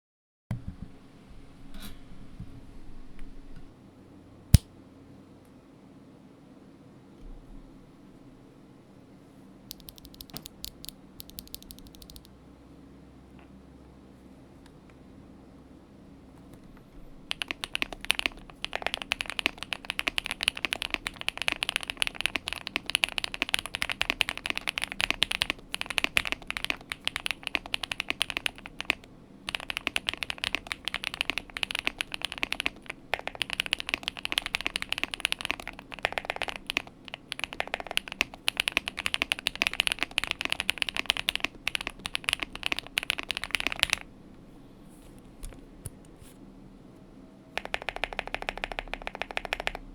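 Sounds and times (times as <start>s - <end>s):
fast mechanical keyboard typing: 9.7s - 12.3s, 17.3s - 44.1s, 47.6s - 49.9s.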